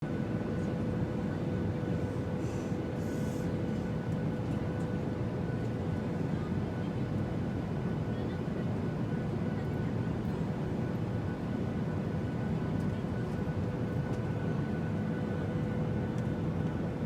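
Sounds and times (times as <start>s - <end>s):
airliner cabin rumble: 0.1s - 17.0s.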